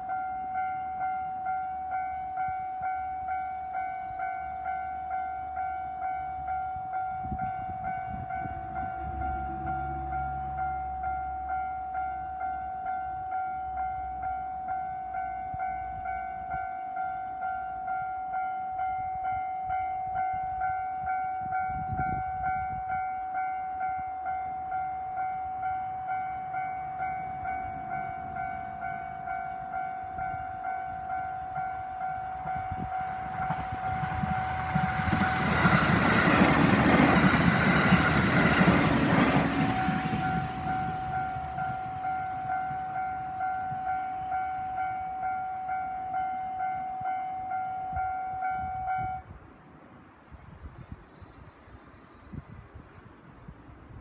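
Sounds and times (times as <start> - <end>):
level crossing alarm ringing: 0.0 - 49.3
train wheels rumbling on rails: 24.8 - 49.3.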